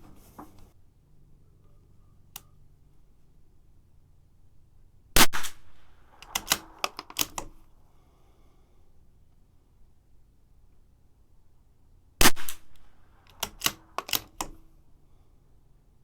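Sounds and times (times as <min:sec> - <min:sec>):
rifle shot: 0:05.2 - 0:07.4, 0:12.2 - 0:14.2
metallic clicks of rifle bolt: 0:05.3 - 0:07.7, 0:12.3 - 0:14.7.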